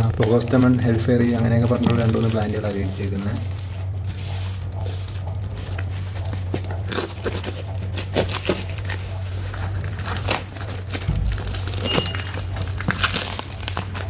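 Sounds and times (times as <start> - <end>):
packaging crinkling and tearing: 0.0 - 14.0
steady low hum: 0.0 - 14.0.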